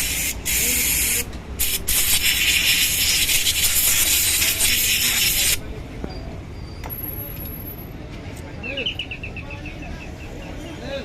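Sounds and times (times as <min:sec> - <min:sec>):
spray hissing: 0:00.0 - 0:05.6.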